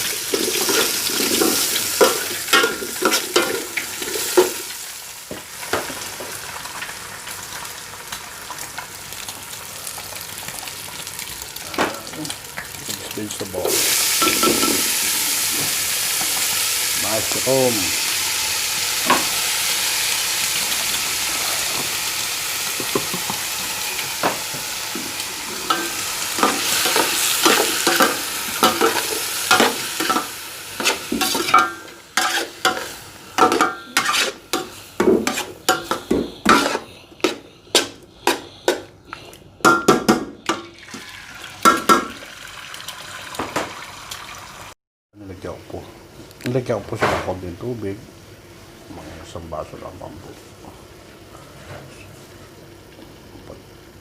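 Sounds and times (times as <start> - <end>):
vegetables sizzling in oil: 0.0 - 39.0, 40.4 - 44.8
spatula scraping a pan: 25.4 - 38.9.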